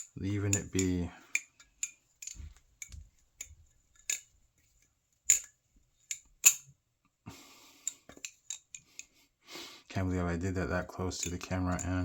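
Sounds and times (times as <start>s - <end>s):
metal parts clicking and clinking: 0.0s - 6.8s, 7.8s - 9.1s, 11.0s - 12.0s.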